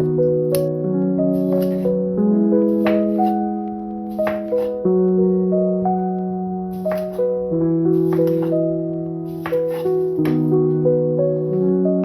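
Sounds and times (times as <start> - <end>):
piano chords with soft beat: 0.0 - 12.0.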